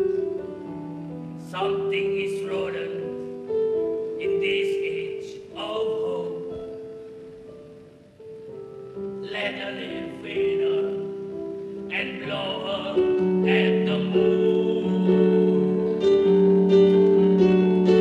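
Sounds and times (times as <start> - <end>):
instrumental accompaniment: 6.3 - 18.0
person singing long notes: 9.2 - 18.0.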